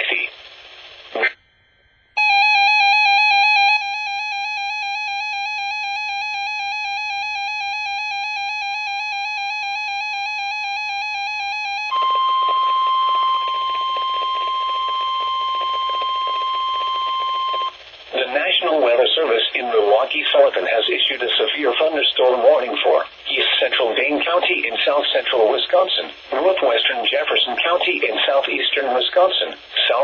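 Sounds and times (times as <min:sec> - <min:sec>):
faint static: 0:00.0 - 0:03.8, 0:11.2 - 0:30.0
steady warning tone: 0:02.0 - 0:30.0
warbling electronic alarm tone: 0:02.2 - 0:20.9.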